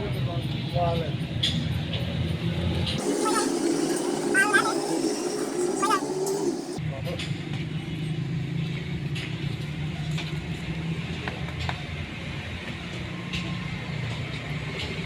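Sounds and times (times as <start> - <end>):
low mechanical hum: 3.0 - 6.8.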